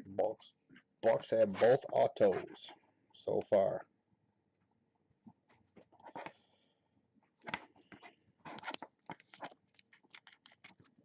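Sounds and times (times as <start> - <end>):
cards and wrappers crinkling: 8.4 - 11.0.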